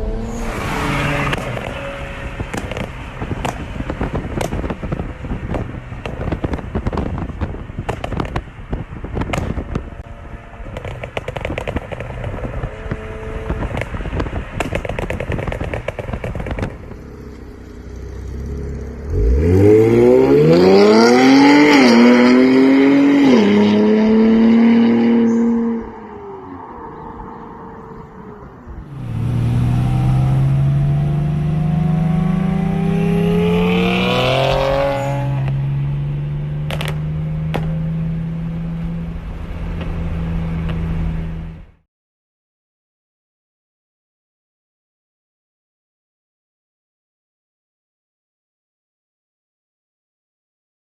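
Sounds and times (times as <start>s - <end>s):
engine rumble: 0.0s - 41.8s
exhaust crackling and popping: 1.2s - 17.9s, 34.9s - 41.8s
engine revving under full throttle: 18.3s - 26.0s, 28.9s - 39.1s.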